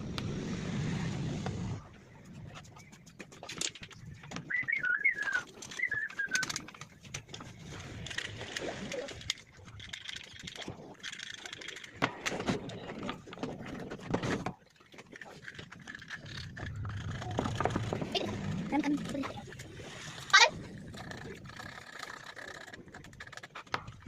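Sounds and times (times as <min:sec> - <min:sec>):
birds calling: 0:04.4 - 0:06.6.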